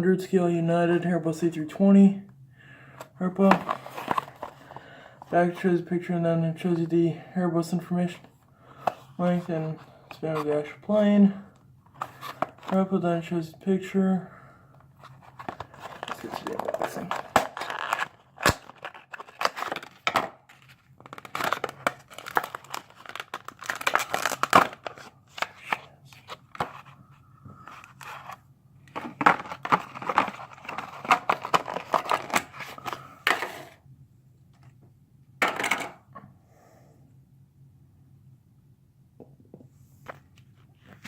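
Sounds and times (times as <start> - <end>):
packaging rustling and tearing: 3.5 - 4.8, 15.0 - 27.0, 27.6 - 33.8.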